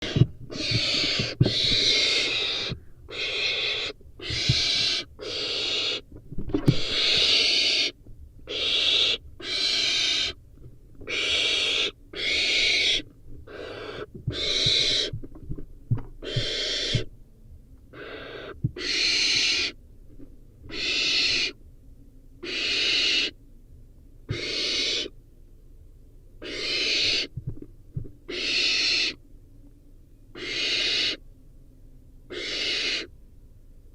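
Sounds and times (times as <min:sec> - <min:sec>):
owl chick hissing: 0:00.0 - 0:06.0, 0:06.7 - 0:10.4, 0:11.1 - 0:15.1, 0:16.2 - 0:17.1, 0:17.9 - 0:19.8, 0:20.7 - 0:21.6, 0:22.4 - 0:23.4, 0:24.3 - 0:25.2, 0:26.4 - 0:27.3, 0:28.3 - 0:29.2, 0:30.3 - 0:31.2, 0:32.3 - 0:33.1
faint knocks and scratches: 0:14.1 - 0:16.5, 0:27.4 - 0:28.2.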